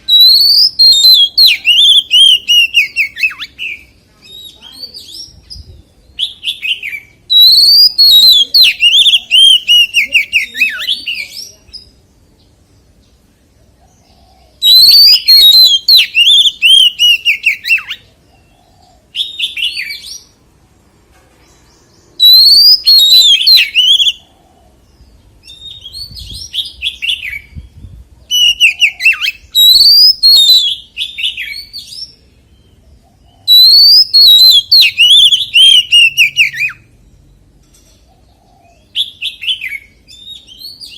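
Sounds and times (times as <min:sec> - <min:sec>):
bird singing whistled phrases: 0:00.0 - 0:11.9, 0:14.6 - 0:18.1, 0:22.1 - 0:24.3, 0:25.4 - 0:27.7, 0:28.3 - 0:32.2, 0:33.4 - 0:37.0, 0:38.7 - 0:40.9.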